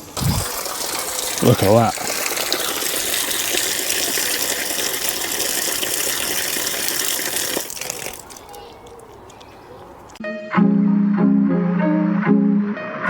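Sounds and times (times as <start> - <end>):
water gushing from a sink tap: 0.0 - 8.6.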